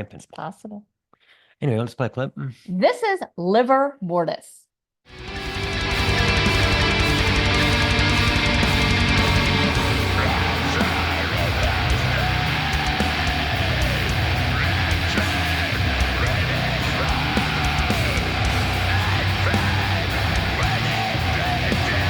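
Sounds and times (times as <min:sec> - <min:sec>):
death metal music: 0:05.1 - 0:22.0
heavy guitar riffs: 0:05.1 - 0:22.0.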